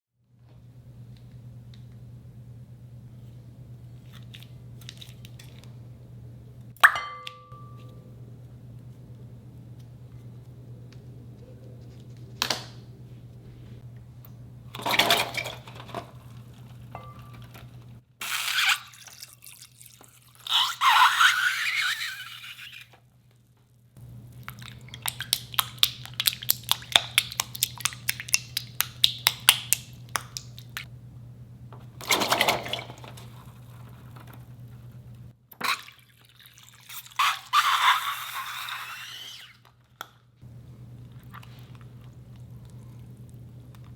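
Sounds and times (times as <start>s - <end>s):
steady low hum: 27.6s - 35.4s.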